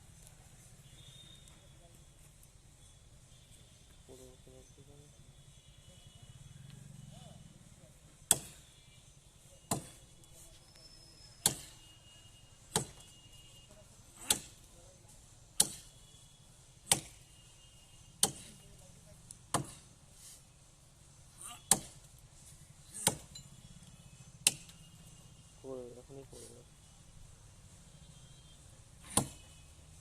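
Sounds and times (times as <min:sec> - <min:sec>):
blade chopping into tree: 0:08.2 - 0:08.6, 0:09.7 - 0:10.0, 0:11.4 - 0:11.8, 0:12.7 - 0:13.1, 0:14.2 - 0:14.6, 0:15.6 - 0:15.9, 0:16.8 - 0:17.2, 0:18.2 - 0:18.6, 0:19.5 - 0:19.8, 0:21.4 - 0:22.0, 0:22.9 - 0:23.3, 0:24.4 - 0:24.8, 0:29.0 - 0:29.5.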